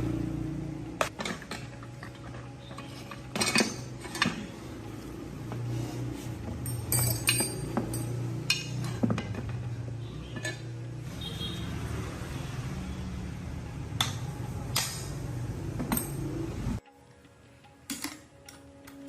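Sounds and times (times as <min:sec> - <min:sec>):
metal parts and tools clinking: 0:01.0 - 0:05.6, 0:06.3 - 0:10.8, 0:14.0 - 0:16.8, 0:17.6 - 0:19.0.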